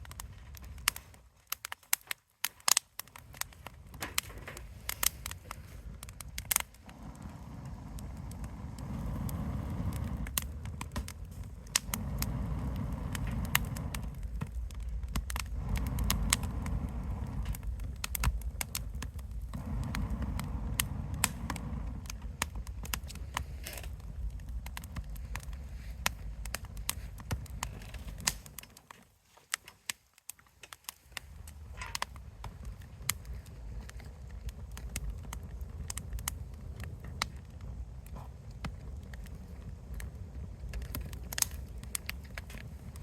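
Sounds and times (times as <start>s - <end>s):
wood fire crackling: 0.0s - 43.0s
low rushing sound: 6.8s - 22.6s.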